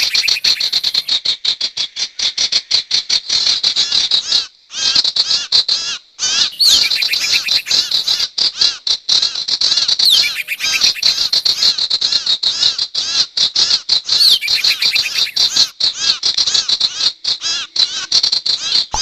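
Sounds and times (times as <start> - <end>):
high arched bird chirps: 0.0 - 1.1, 6.5 - 8.2, 10.0 - 11.7, 14.2 - 15.7.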